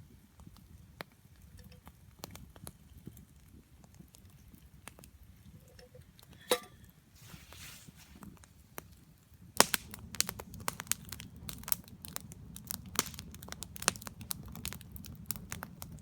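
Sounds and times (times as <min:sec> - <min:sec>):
campfire crackling and popping: 0:00.0 - 0:06.4, 0:07.0 - 0:16.0
short rustle: 0:07.2 - 0:08.4.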